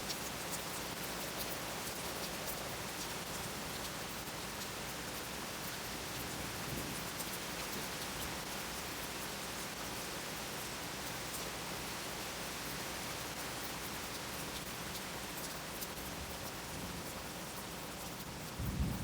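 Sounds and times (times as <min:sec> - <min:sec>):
steady rain hiss: 0:00.0 - 0:19.0.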